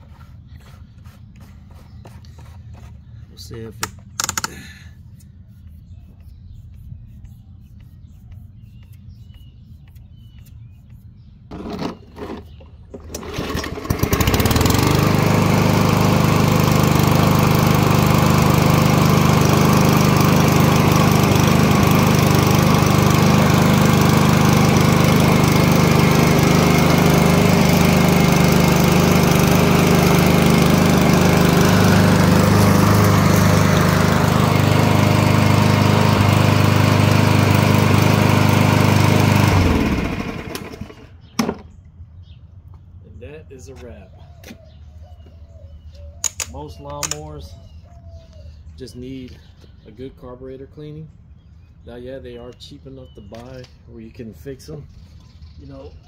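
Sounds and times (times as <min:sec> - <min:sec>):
lawn mower pull-start tugs: 0:03.8 - 0:04.7, 0:11.5 - 0:41.7, 0:46.2 - 0:47.5
lawn mower engine running: 0:03.8 - 0:04.8, 0:11.5 - 0:41.6, 0:46.2 - 0:47.3.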